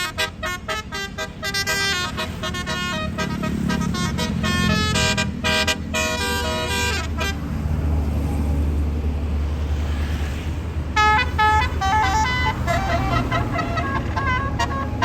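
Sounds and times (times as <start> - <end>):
musical bus horn: 0.0 - 7.7, 11.0 - 15.0
diesel engine rumbling: 0.0 - 15.0.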